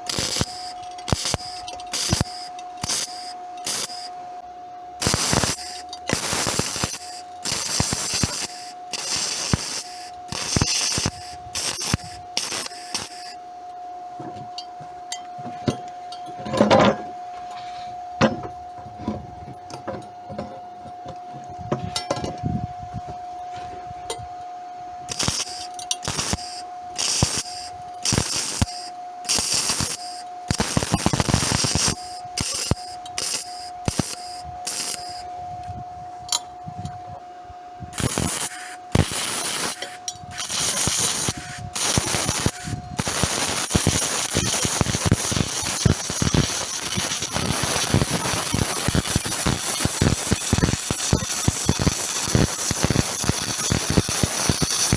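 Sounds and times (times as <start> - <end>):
welding arc crackling: 0.0 - 4.2, 5.0 - 13.4, 25.1 - 35.2, 37.8 - 54.9
steady high whine: 0.0 - 54.9.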